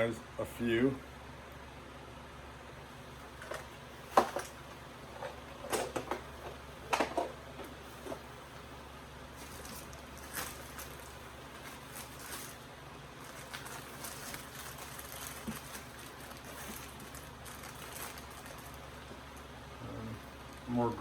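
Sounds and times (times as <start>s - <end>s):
low background hum: 0.0s - 21.0s
small items rustling and clicking: 9.4s - 19.5s.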